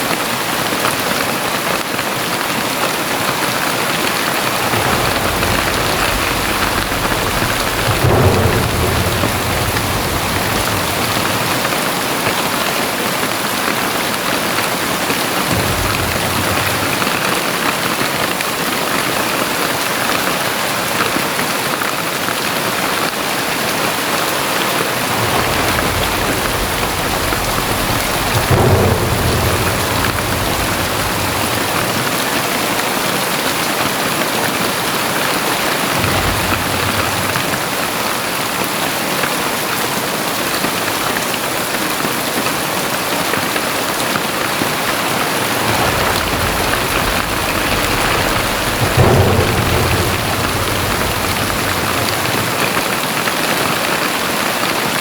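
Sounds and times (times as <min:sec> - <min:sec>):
heavy rain hissing: 0:00.2 - 0:55.0
deep rumbles: 0:03.9 - 0:18.7, 0:24.3 - 0:33.0, 0:35.7 - 0:39.1, 0:43.4 - 0:53.7.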